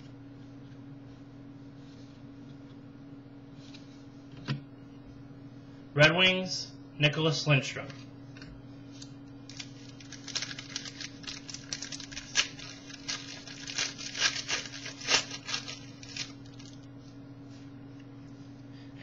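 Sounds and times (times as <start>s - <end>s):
low electrical hum: 0.0s - 19.0s
trading cards rustling: 9.4s - 16.9s.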